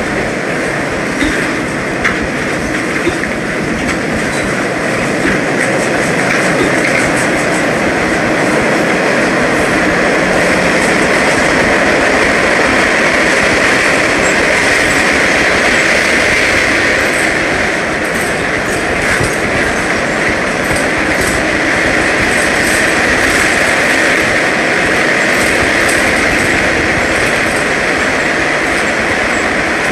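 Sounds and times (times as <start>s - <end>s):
subway train wheel and rail noise: 0.0s - 29.9s
track clicking: 0.0s - 29.9s.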